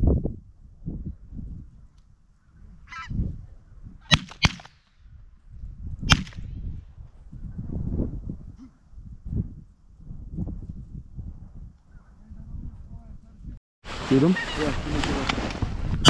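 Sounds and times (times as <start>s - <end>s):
wind rumbling on microphone: 0.0s - 16.0s
goose call: 2.9s - 3.2s, 14.1s - 14.8s
shotgun shots: 4.1s - 4.9s, 6.1s - 6.5s.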